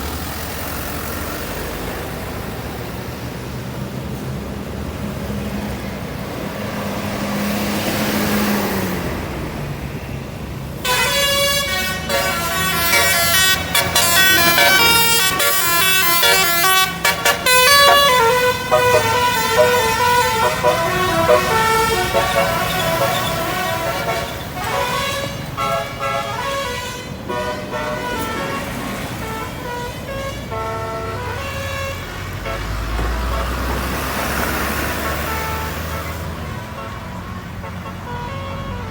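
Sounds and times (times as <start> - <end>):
musical air horn melody: 10.8 - 33.6
vehicle engine running: 12.1 - 26.2.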